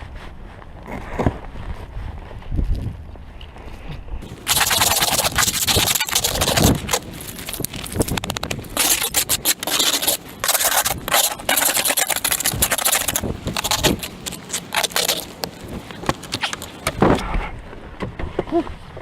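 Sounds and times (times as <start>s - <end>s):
scraping and rubbing strokes: 4.2s - 17.0s.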